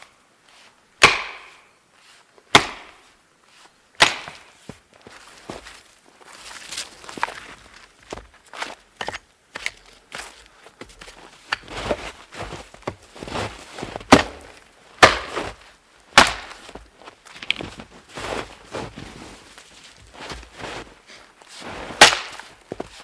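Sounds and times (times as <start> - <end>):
crunches and knocks: 9.0 - 21.0.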